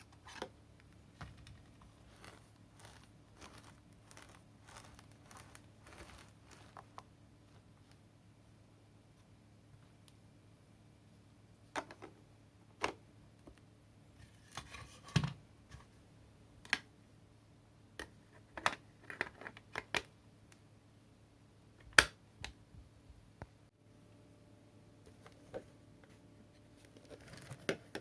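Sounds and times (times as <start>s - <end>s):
scraping rustle: 1.8s - 7.0s.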